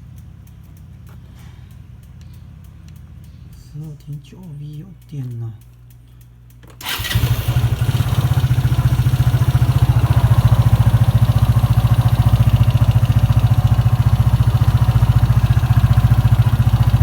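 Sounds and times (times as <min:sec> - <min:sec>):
scooter engine starting and idling: 0:06.6 - 0:17.0
rapid metallic engine knock: 0:06.8 - 0:17.0.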